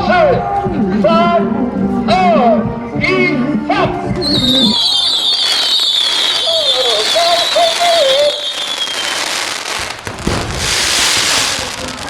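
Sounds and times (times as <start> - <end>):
firework crackling: 4.3 - 12.0
firework whistle sliding down: 4.6 - 9.7
loud firework burst: 4.7 - 12.0.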